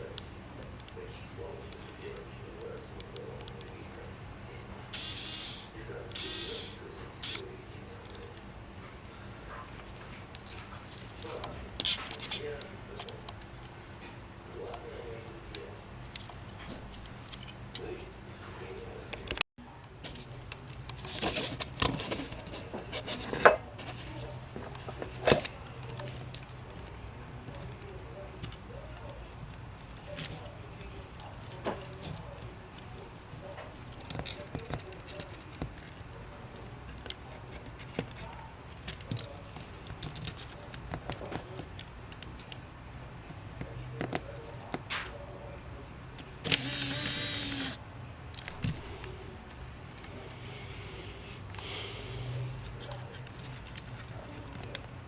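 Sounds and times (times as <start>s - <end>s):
camera lens motor whirring: 5.0s - 7.4s, 46.4s - 47.8s
handling clicks and taps: 19.1s - 45.2s, 52.6s - 55.0s.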